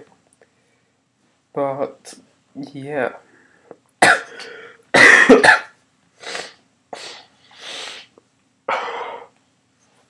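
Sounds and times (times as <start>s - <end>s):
person coughing: 4.0s - 5.8s.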